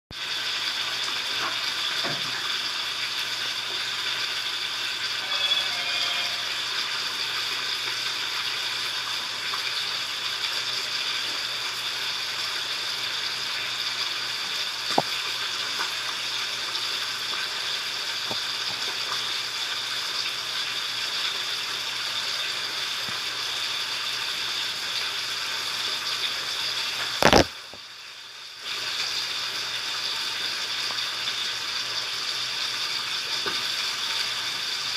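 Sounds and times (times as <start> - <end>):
slime crackling bubbles: 27.2 - 27.6.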